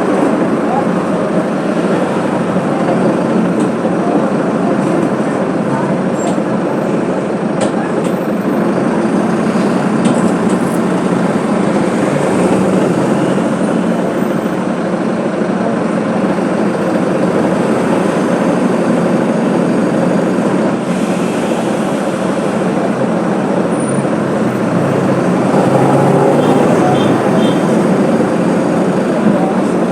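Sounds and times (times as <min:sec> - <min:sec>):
bus engine rumbling: 0:00.0 - 0:29.9.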